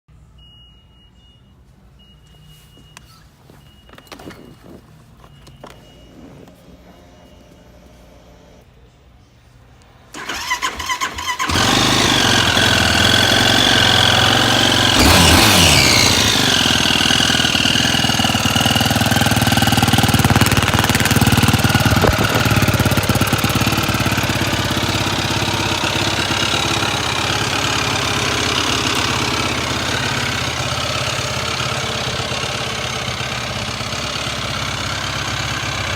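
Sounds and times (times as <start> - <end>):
engine cranking: 10.1 - 35.9
engine idling and revving: 10.2 - 35.9.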